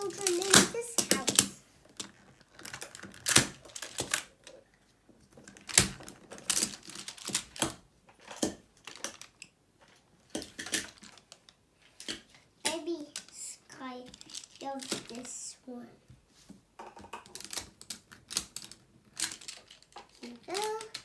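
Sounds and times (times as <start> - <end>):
plastic tiles clacking together: 0.0 - 4.6, 10.3 - 15.5, 16.8 - 21.0.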